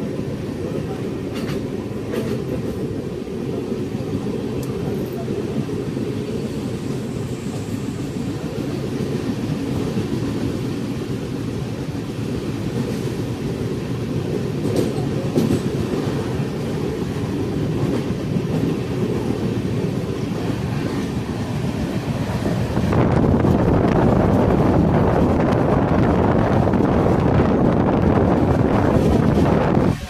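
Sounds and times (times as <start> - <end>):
train wheels on rails: 0.0 - 30.0
faint clicks: 4.6 - 4.8.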